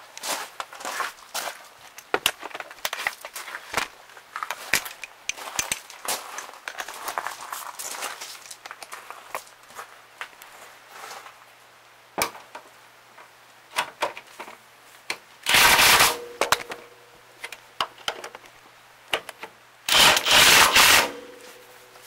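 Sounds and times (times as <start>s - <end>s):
power tool bursts: 15.5s - 16.5s, 19.9s - 21.4s
clicks and knocks on metal parts: 15.5s - 21.3s.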